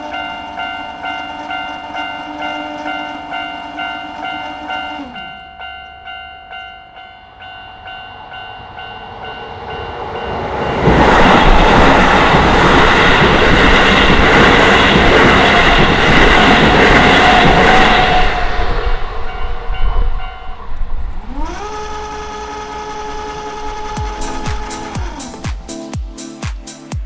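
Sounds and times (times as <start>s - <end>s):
level crossing warning bell: 0.0s - 18.3s
train passing: 0.0s - 27.0s.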